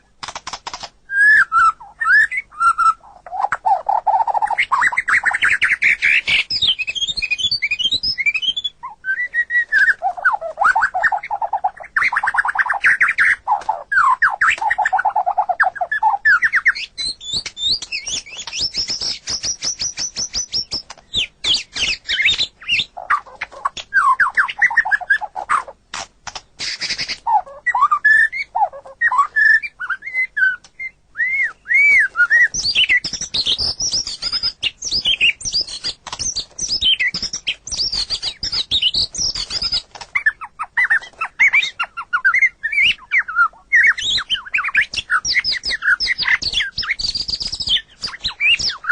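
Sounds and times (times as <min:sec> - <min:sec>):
bird clicking chatter: 0:00.2 - 0:01.0, 0:17.2 - 0:25.3, 0:32.6 - 0:41.3
songbird singing whistled phrases: 0:01.1 - 0:25.7, 0:26.6 - 0:48.9.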